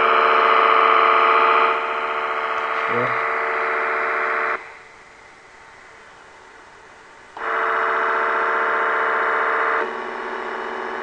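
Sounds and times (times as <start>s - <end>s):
radio speaker harsh digital buzz: 0.0s - 4.8s, 7.4s - 11.0s.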